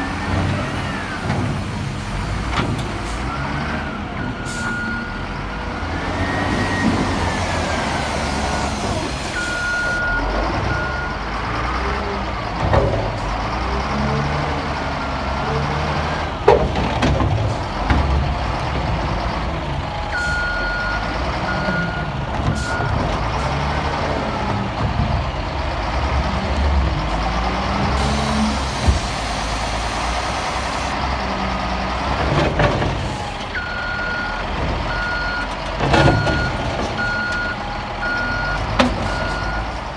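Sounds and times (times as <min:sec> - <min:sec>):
diesel loader engine revving: 0:00.0 - 0:39.9
reversing alarm beeping: 0:03.3 - 0:07.3, 0:07.9 - 0:11.2, 0:20.1 - 0:23.0, 0:33.6 - 0:39.8.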